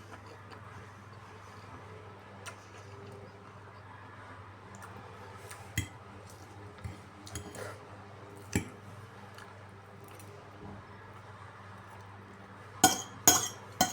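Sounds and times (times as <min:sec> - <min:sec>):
utensils clinking against a dish: 0:06.8 - 0:07.8, 0:12.8 - 0:13.9.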